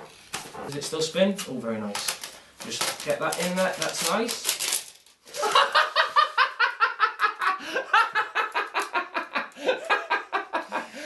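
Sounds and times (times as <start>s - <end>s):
hearty laughter: 5.4s - 11.0s.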